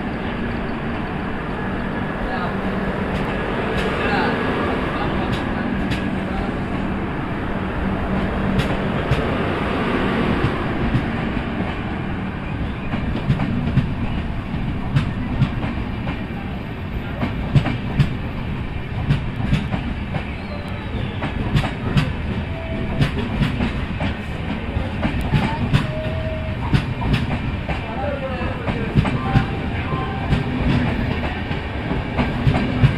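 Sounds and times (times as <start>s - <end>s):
train rumble: 0.0s - 32.9s
train wheels clicking over rail joints: 8.1s - 9.4s, 16.9s - 32.9s.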